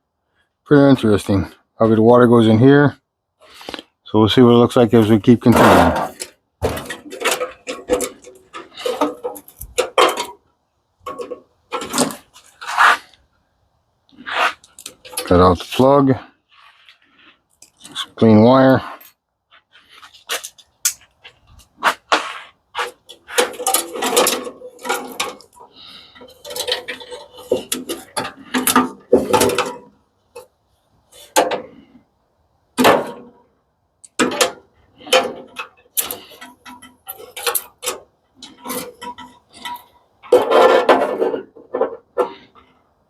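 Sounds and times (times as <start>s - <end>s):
metal parts and tools clinking: 5.0s - 10.5s, 22.8s - 30.5s, 34.0s - 42.5s.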